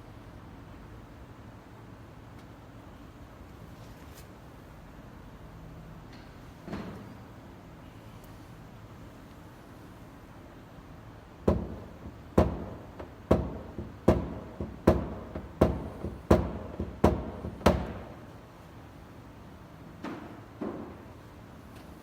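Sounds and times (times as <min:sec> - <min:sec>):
hammer tapping metal panel: 0:11.5 - 0:18.3.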